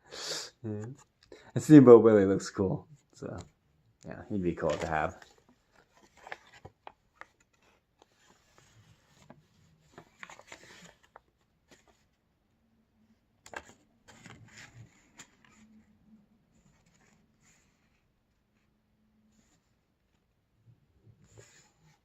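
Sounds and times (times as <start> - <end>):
paper rustling and tapping: 4.4 - 12.0, 13.4 - 15.5.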